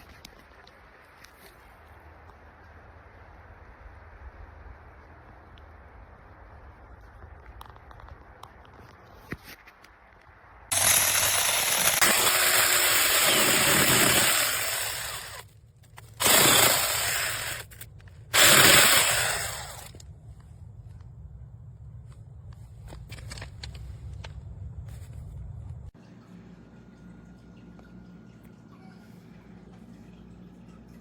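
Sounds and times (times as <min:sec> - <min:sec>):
mini chainsaw running: 0:10.7 - 0:15.4, 0:16.2 - 0:20.0.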